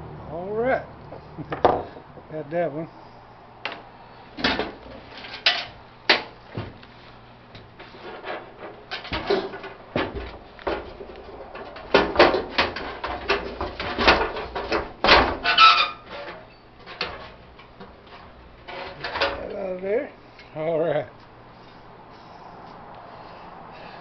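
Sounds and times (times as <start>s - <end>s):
metal clanking and scraping: 4.4s - 6.8s, 7.8s - 19.6s
metal knocks: 8.9s - 18.0s.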